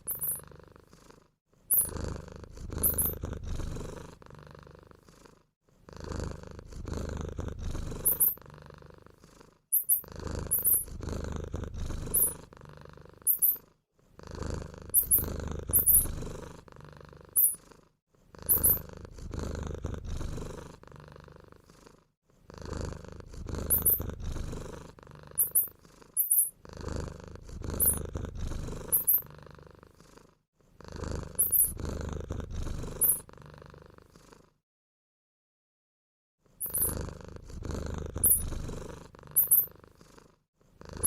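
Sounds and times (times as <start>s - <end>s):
high-pitched mouse squeaks: 0.0s - 0.4s, 1.7s - 1.9s, 2.8s - 3.2s, 8.0s - 8.4s, 9.8s - 10.9s, 12.1s - 12.4s, 13.3s - 13.6s, 15.0s - 16.1s, 17.4s - 17.6s, 18.5s - 18.8s, 23.7s - 24.1s, 25.4s - 26.5s, 27.8s - 28.0s, 28.9s - 29.2s, 31.4s - 31.8s, 33.0s - 33.2s, 36.6s - 37.0s, 38.2s - 38.5s, 39.3s - 39.7s
low purr-like rumbling: 0.0s - 13.4s, 14.1s - 34.5s, 36.6s - 41.0s.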